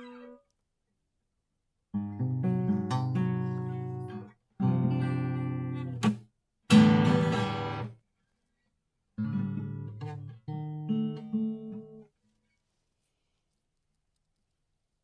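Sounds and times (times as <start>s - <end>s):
guitar plucked notes and chords: 1.9s - 8.0s, 9.2s - 12.1s.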